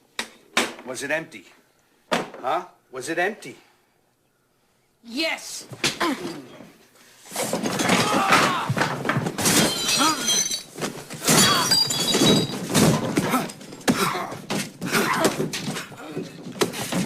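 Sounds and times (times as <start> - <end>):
things crashing and thudding: 7.3 - 17.0
strained grunts and cries: 7.8 - 8.9, 13.0 - 17.0
glass shattering: 9.3 - 14.6
glass ringing: 9.5 - 10.7, 11.3 - 12.7.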